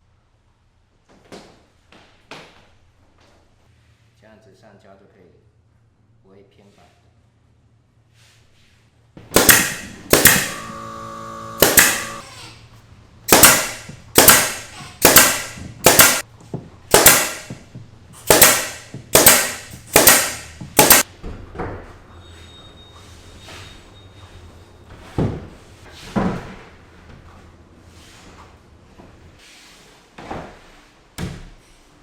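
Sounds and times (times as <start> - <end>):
sharp loud cracks with ringing: 9.4 - 10.7, 11.6 - 12.3, 13.3 - 16.2, 16.9 - 17.5, 18.3 - 21.0.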